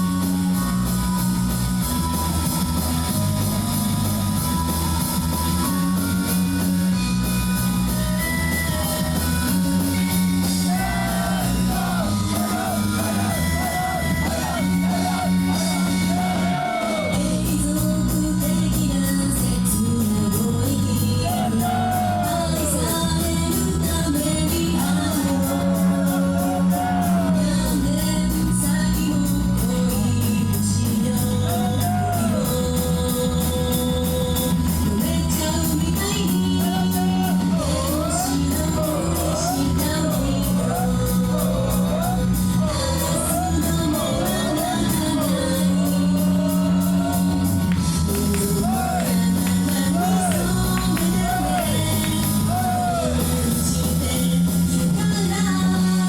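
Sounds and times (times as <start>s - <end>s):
heavy bass: 0.0s - 56.0s
rock song through a pa: 0.0s - 56.0s
steady drumbeat: 8.6s - 18.8s, 29.6s - 55.8s
woman singing: 10.0s - 56.0s.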